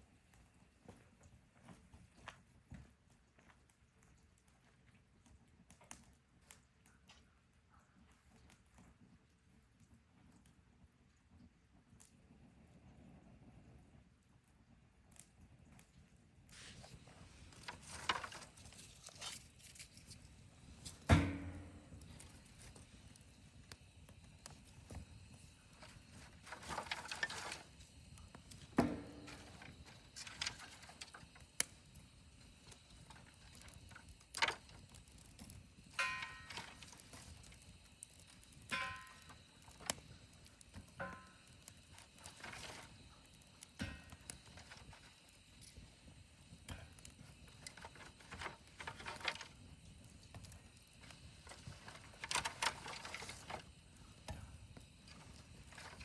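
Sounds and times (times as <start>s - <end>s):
wood fire knocks and pops: 16.8s - 56.0s.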